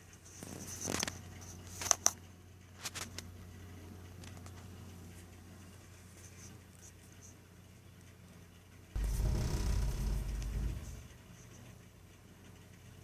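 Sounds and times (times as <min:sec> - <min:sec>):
boiler humming: 0:07.4 - 0:13.0.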